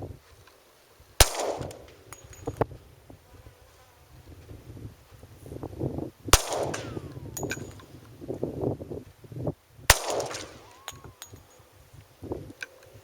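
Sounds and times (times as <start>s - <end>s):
pistol shots with echo: 1.2s - 2.3s, 6.4s - 7.8s, 9.9s - 11.3s.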